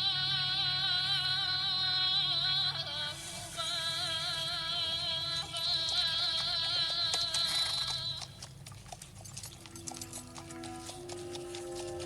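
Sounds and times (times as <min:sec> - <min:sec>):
horse hooves clip-clopping: 0:05.3 - 0:12.0
background music: 0:09.6 - 0:12.0.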